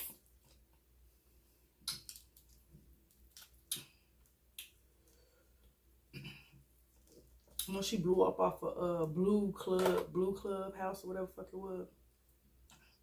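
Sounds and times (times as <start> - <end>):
eating with clicks and wet smacks: 1.8 - 7.8.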